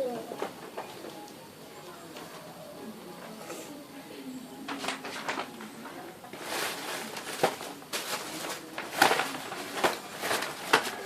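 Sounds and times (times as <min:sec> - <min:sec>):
rustling: 0:04.6 - 0:11.0.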